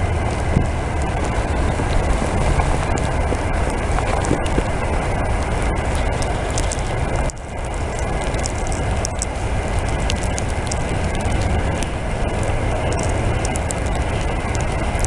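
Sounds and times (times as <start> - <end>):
wind buffeting microphone: 0.0 - 15.0
small clicks: 5.9 - 7.4, 8.0 - 15.0.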